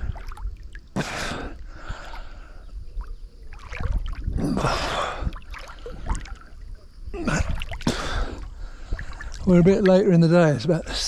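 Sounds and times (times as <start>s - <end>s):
swimmer breathing: 1.0s - 2.9s, 7.3s - 9.4s.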